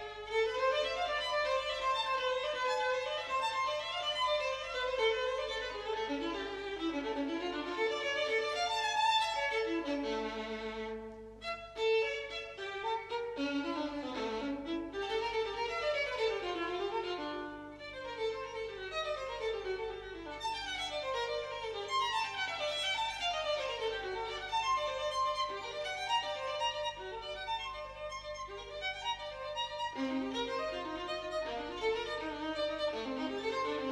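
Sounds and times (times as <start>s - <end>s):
violin music: 0.0s - 33.9s.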